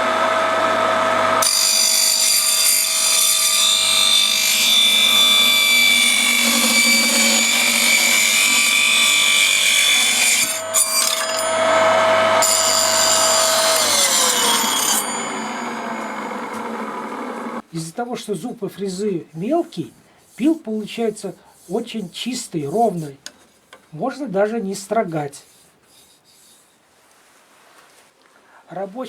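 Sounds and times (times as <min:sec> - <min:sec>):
circular saw cutting wood: 0:00.0 - 0:17.6.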